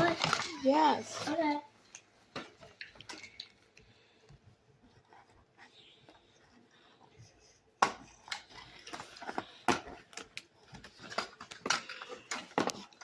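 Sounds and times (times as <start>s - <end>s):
clicks and knocks of hard objects: 0.0s - 3.9s, 7.8s - 13.0s.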